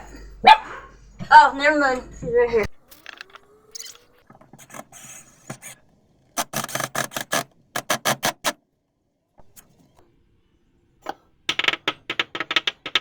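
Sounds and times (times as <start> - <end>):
rasping wood by hand: 4.5 - 5.8, 6.4 - 8.6.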